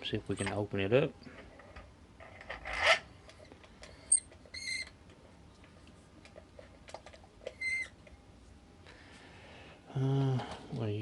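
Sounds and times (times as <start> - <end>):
high squeak: 4.1 - 4.9, 7.6 - 7.9.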